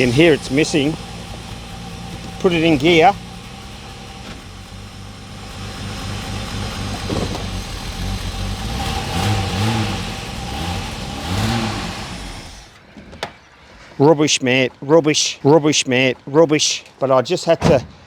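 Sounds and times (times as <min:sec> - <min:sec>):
car engine misfiring: 0:00.0 - 0:12.8.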